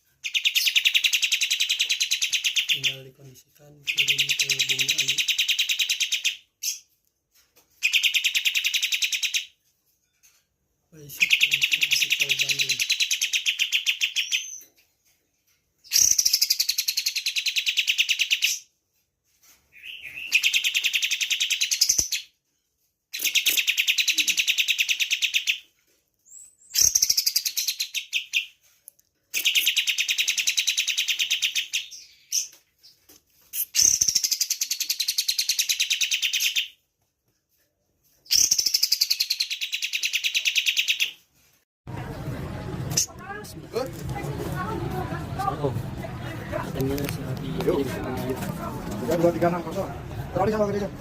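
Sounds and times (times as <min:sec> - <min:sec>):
bird chattering song: 0:00.2 - 0:03.2, 0:03.8 - 0:06.9, 0:07.8 - 0:09.5, 0:11.0 - 0:14.7, 0:15.8 - 0:18.7, 0:19.8 - 0:22.3, 0:23.2 - 0:25.6, 0:26.3 - 0:28.6, 0:29.3 - 0:36.8, 0:38.3 - 0:41.2.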